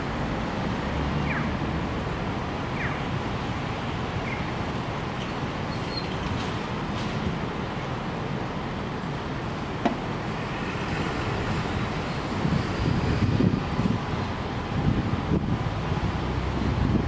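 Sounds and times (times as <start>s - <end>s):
city traffic: 0.0s - 17.0s
strong wind: 0.0s - 17.0s
wind buffeting microphone: 11.2s - 17.0s.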